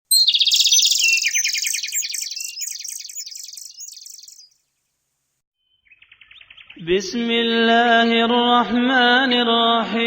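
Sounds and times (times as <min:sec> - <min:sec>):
birds chirping in trills: 0:00.1 - 0:06.9.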